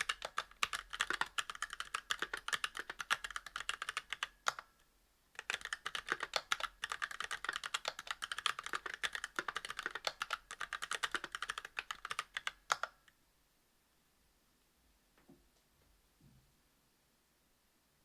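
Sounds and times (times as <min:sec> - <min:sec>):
fast typing on mechanical keyboard: 0:00.0 - 0:04.7, 0:05.4 - 0:13.0.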